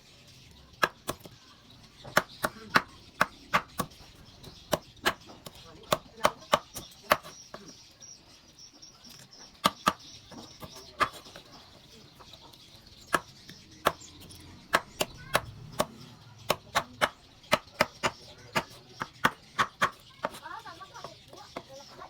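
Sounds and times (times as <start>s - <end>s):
knife chopping on a board: 0.8s - 1.3s, 2.0s - 7.6s, 9.6s - 11.4s, 13.1s - 20.4s.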